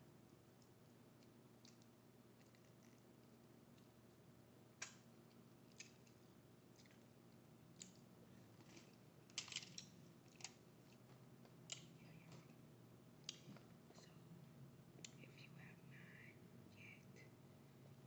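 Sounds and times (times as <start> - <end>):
small eating crunches: 0.5 - 4.2, 4.8 - 12.6.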